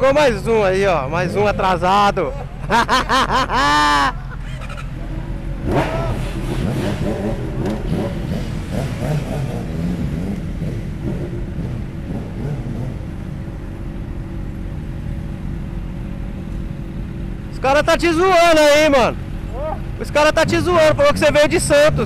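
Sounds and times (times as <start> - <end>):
motorcycle engines rumbling: 0.0 - 22.0.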